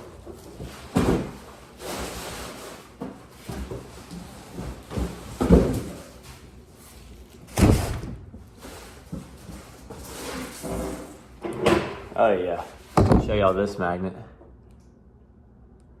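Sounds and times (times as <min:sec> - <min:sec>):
cardboard scraping and rustling: 0:00.2 - 0:11.3.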